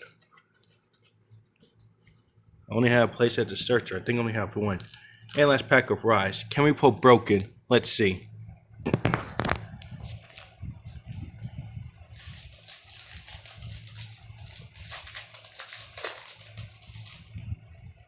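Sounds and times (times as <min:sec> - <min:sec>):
foil wrapper crinkling and tearing: 0:04.7 - 0:05.8, 0:08.9 - 0:17.5.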